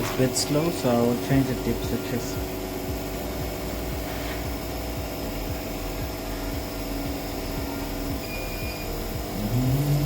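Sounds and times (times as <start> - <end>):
steady machine hum: 0.0 - 10.0.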